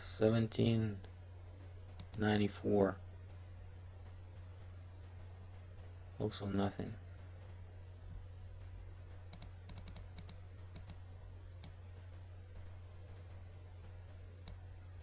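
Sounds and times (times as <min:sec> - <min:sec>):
low electrical hum: 0:00.0 - 0:15.0
computer mouse clicks: 0:02.0 - 0:02.2, 0:09.3 - 0:11.0, 0:11.6 - 0:11.8, 0:14.4 - 0:14.6.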